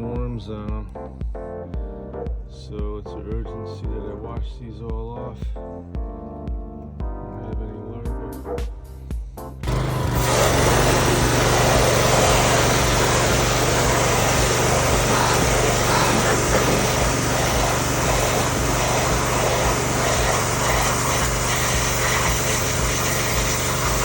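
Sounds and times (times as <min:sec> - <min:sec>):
pressure washer motor humming: 0:09.6 - 0:24.0
high-pressure water jet hissing: 0:09.7 - 0:24.0.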